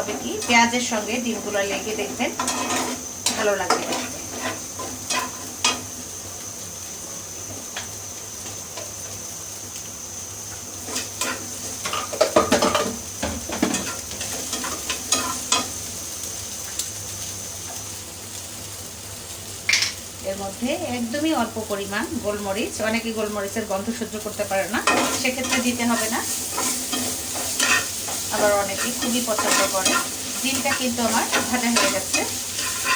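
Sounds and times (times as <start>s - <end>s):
food sizzling in a pan: 0.0s - 32.9s
spatula scraping and tapping pan: 2.0s - 5.9s, 10.9s - 15.7s, 24.8s - 32.9s.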